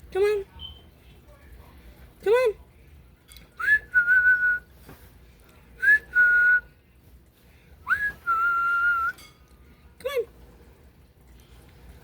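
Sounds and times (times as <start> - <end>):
person whistling notes: 7.9 - 9.2.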